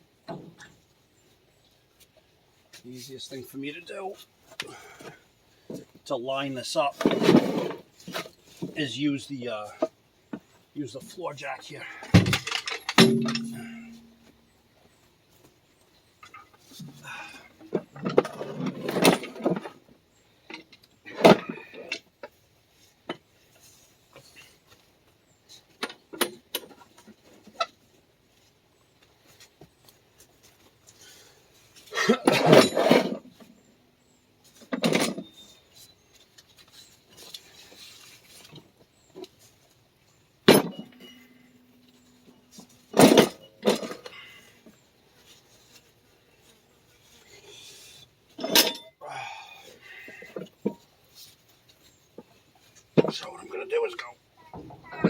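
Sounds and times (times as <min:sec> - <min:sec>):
metal clanking and rattling: 0:12.1 - 0:14.3, 0:32.0 - 0:33.5, 0:34.7 - 0:35.5, 0:40.5 - 0:44.3, 0:48.4 - 0:48.9
metal knocks: 0:12.2 - 0:14.3.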